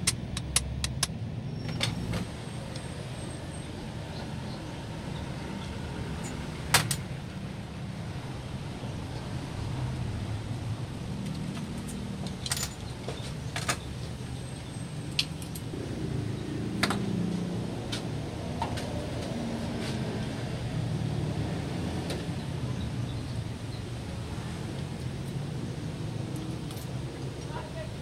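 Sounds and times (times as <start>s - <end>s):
sharp metallic clinks: 11.8s - 12.9s.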